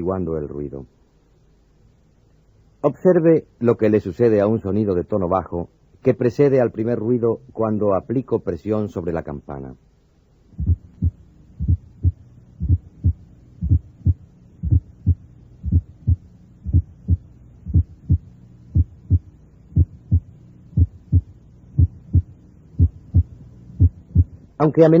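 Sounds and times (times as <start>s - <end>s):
steady low hum: 0.0s - 25.0s
heartbeat thumps through stethoscope: 10.6s - 24.4s.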